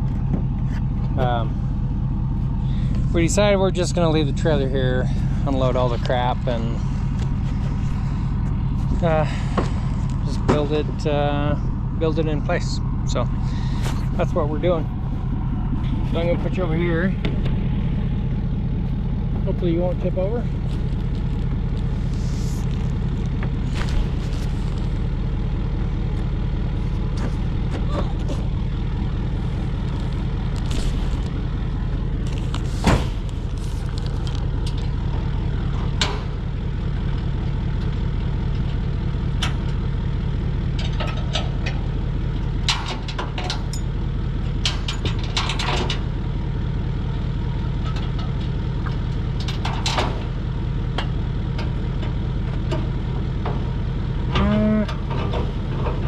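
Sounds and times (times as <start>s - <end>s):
truck engine idling: 0.0s - 56.0s
knocks and clatters: 40.7s - 41.8s, 42.5s - 43.9s, 44.6s - 46.1s, 47.8s - 50.4s.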